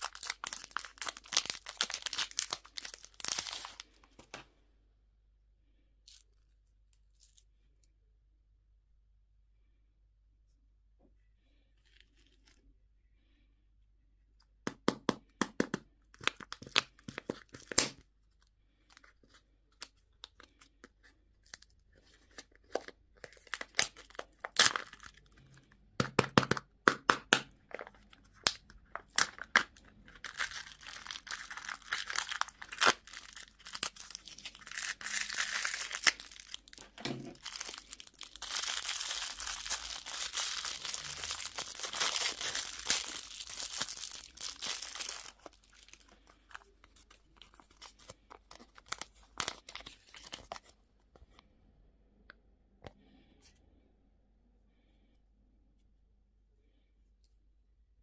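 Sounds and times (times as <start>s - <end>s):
plastic packaging crinkling and tearing: 0.0s - 4.0s, 18.9s - 25.6s, 27.7s - 50.8s
plastic packaging clicks and snaps: 16.2s - 18.0s.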